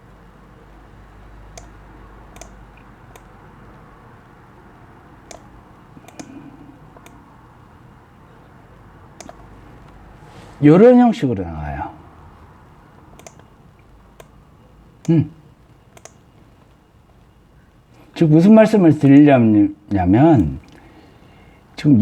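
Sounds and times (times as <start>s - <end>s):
light clicks and taps: 1.5s - 3.8s, 5.3s - 7.2s, 9.2s - 10.0s, 15.0s - 17.2s.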